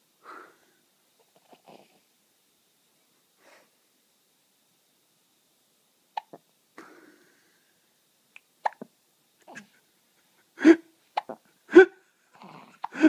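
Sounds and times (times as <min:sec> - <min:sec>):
baby hiccupping: 0:06.2 - 0:06.4, 0:08.6 - 0:09.7, 0:11.2 - 0:13.0.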